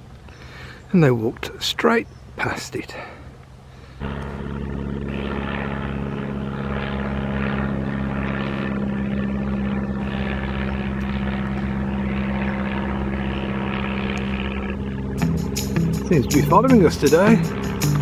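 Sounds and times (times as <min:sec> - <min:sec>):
boat engine running: 0:04.0 - 0:18.0.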